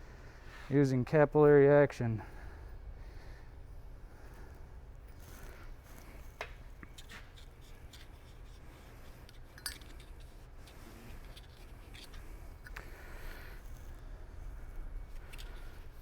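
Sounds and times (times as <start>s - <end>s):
low steady hum: 0.0s - 16.0s
copper pipe clicks and scrapes: 5.1s - 16.0s.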